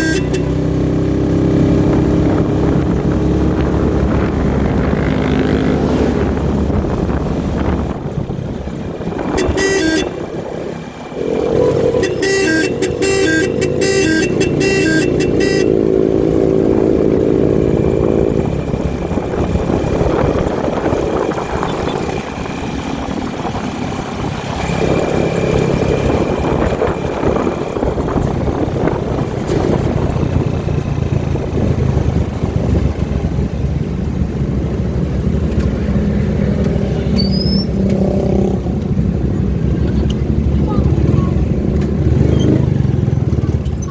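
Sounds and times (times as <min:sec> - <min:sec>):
loud pitched engine sound: 0:00.0 - 0:34.6
vehicle engine running: 0:00.0 - 0:43.9.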